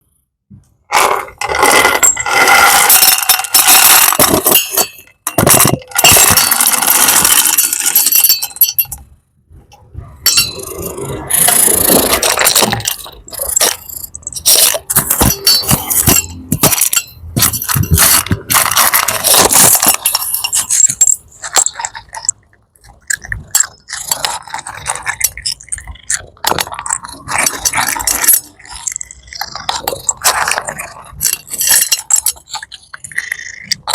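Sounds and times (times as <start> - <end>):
cat crunching food: 10.5 - 33.9.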